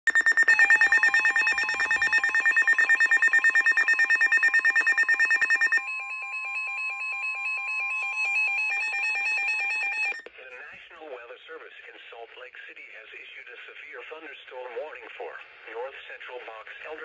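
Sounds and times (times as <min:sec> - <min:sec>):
electronic alarm tones pulsing: 0:00.1 - 0:10.2.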